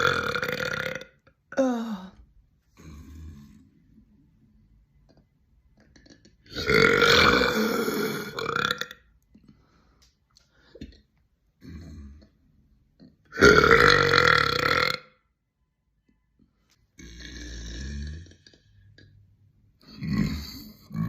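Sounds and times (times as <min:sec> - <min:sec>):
woman burping: 0:00.0 - 0:02.2, 0:06.1 - 0:09.0, 0:13.3 - 0:15.1.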